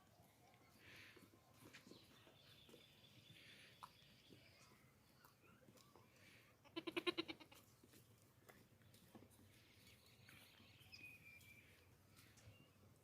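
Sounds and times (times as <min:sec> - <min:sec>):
baby goat bleating: 0:06.7 - 0:07.6.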